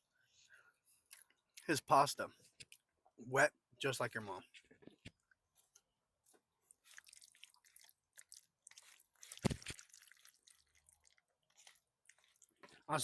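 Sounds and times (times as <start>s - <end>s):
person chewing crunchy food: 6.5s - 12.9s.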